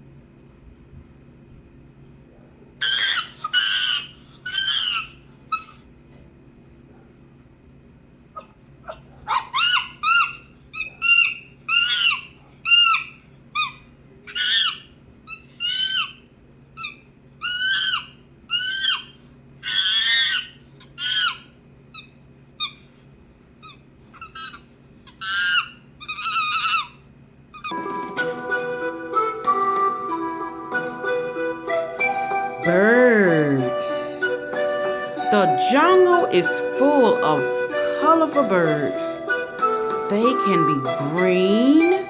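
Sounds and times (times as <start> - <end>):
monkey hoots and screeches: 2.8 - 5.7, 16.8 - 22.8
piano music: 27.7 - 42.0.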